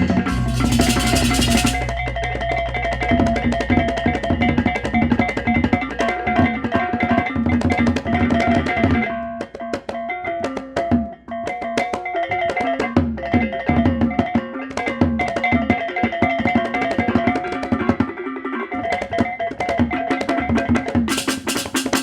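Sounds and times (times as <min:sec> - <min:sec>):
clashing cymbals: 0:00.0 - 0:02.2
gong and metallophone tones: 0:00.0 - 0:05.2
rapid drumming: 0:00.0 - 0:18.2, 0:18.8 - 0:22.0.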